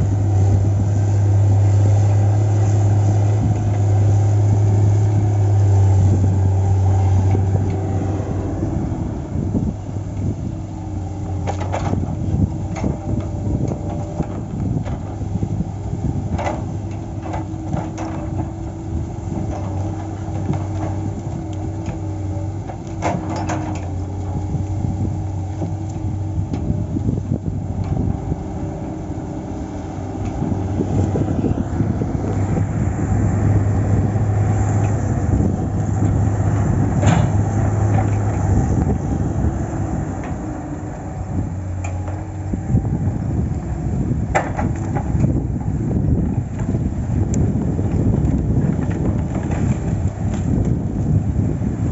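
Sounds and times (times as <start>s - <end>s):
diesel engine humming: 0.0s - 51.9s.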